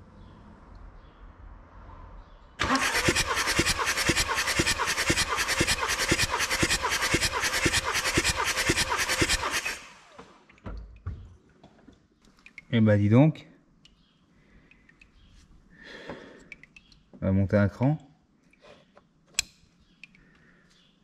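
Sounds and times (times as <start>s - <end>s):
starter motor cranking diesel engine: 2.6s - 10.5s.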